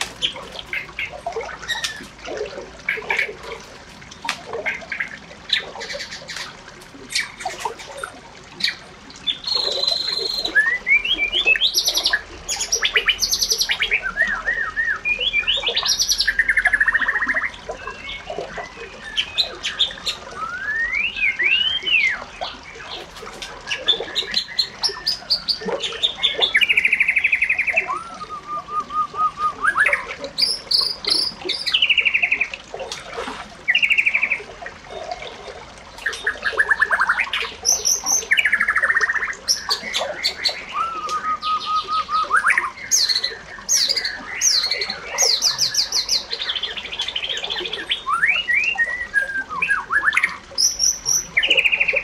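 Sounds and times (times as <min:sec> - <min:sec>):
birdsong with whistles and trills: 0:00.0 - 0:52.0.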